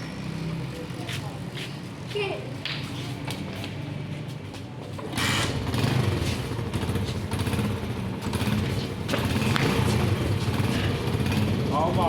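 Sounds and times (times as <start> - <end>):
motorcycle engine running: 5.0 - 12.0.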